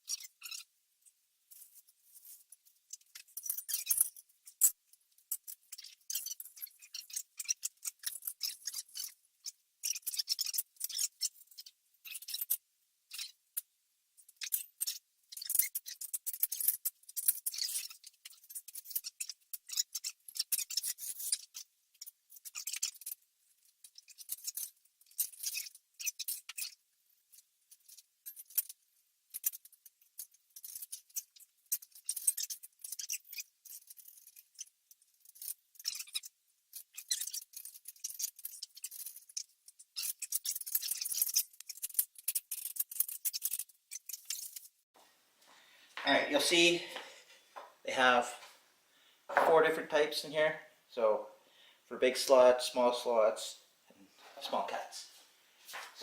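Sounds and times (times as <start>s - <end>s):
metal parts clicking and clinking: 40.0s - 44.7s.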